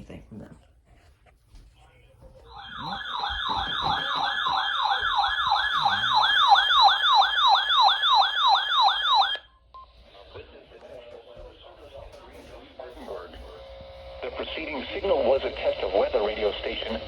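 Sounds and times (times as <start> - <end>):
electronic alert siren wailing: 2.5 - 9.5.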